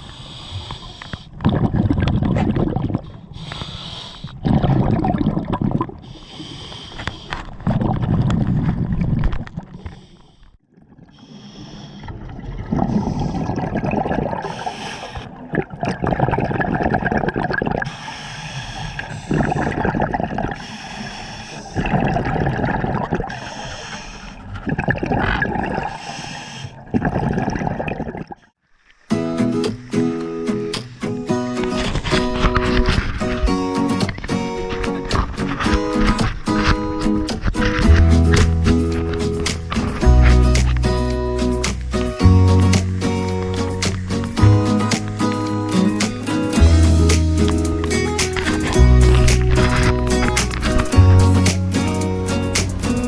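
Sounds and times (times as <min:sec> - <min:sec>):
regulator inhale hiss: 0:00.0 - 0:01.3, 0:03.4 - 0:04.4, 0:06.1 - 0:07.5, 0:11.2 - 0:12.2, 0:14.4 - 0:15.3, 0:17.9 - 0:19.4, 0:20.6 - 0:21.8, 0:23.4 - 0:24.4, 0:26.0 - 0:26.8
regulator exhale bubbles gurgling: 0:01.4 - 0:03.4, 0:04.3 - 0:06.2, 0:12.0 - 0:18.0, 0:19.0 - 0:20.6, 0:21.6 - 0:23.5, 0:24.4 - 0:26.0, 0:26.8 - 0:28.5.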